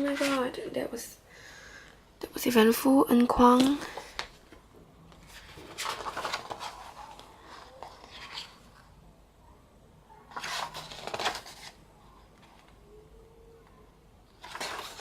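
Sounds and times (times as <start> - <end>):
paper and card rustling: 0.0 - 0.6, 3.4 - 8.9, 10.3 - 12.8, 14.3 - 15.0.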